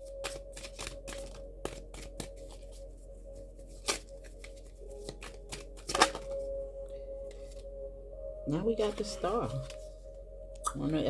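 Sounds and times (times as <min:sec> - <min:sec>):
cards being shuffled: 0:00.0 - 0:02.8, 0:03.6 - 0:06.4.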